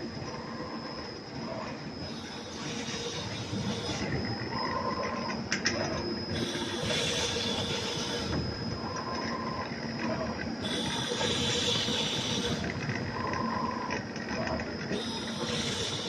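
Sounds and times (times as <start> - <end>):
faint high whine: 0.0 - 16.0
cutting machine running: 14.4 - 16.0.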